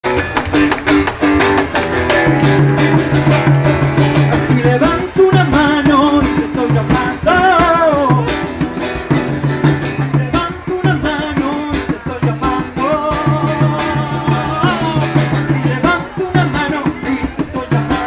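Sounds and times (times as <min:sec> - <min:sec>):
hand percussion beat: 0:00.0 - 0:18.0
strummed acoustic guitar: 0:00.0 - 0:18.0
wordless vocal line: 0:09.9 - 0:18.0.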